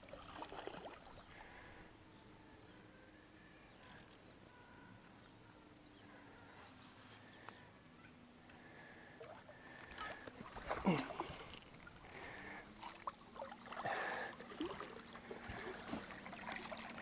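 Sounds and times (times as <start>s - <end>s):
water splashing and sloshing: 0.0s - 1.7s, 9.2s - 17.0s.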